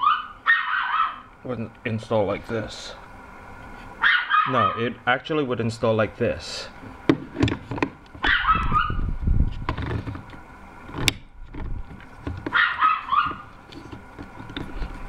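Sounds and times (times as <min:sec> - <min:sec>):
dog barking: 0:00.0 - 0:01.3, 0:04.0 - 0:04.8, 0:08.2 - 0:09.0, 0:12.5 - 0:13.5.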